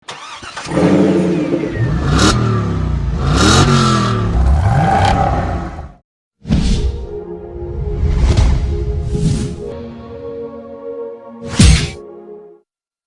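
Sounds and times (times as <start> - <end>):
car engine revving: 0.2 - 6.0.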